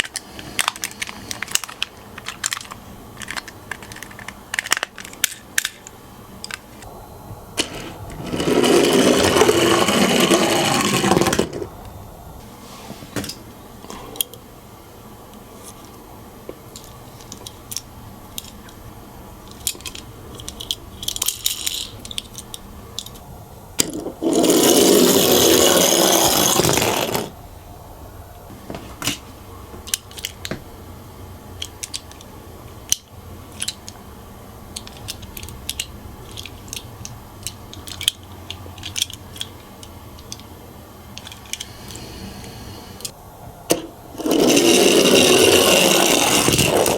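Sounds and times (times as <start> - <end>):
toy cars rolling rattle: 0.0 - 5.8, 7.6 - 11.6, 19.5 - 23.2, 23.8 - 27.3, 34.8 - 39.6, 44.2 - 46.9
toys clicking and knocking: 0.0 - 6.7, 19.5 - 23.2, 31.6 - 34.0, 34.7 - 40.5, 41.2 - 42.0.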